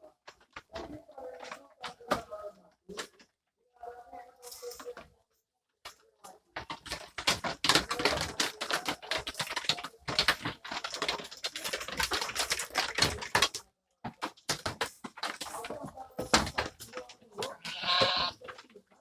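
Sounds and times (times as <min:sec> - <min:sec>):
goat hooves clattering on floor: 0:06.6 - 0:19.0.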